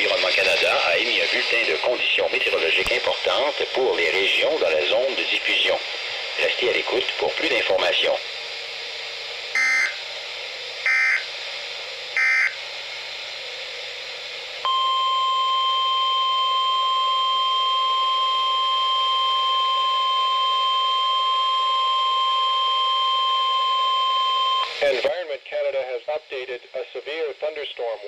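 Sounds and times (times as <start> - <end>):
radio hiss: 0.0 - 8.3, 24.6 - 28.0
steady warning alarm tone: 9.6 - 10.0, 10.8 - 11.3, 12.2 - 12.6, 14.7 - 24.8
warbling digital data tones: 9.6 - 10.0, 10.9 - 11.2, 12.2 - 12.6.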